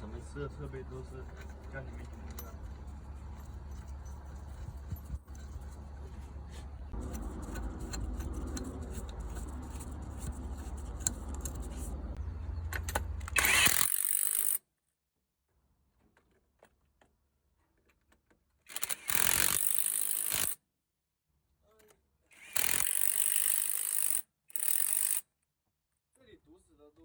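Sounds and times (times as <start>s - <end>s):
diesel truck engine rumbling: 5.8s - 13.4s.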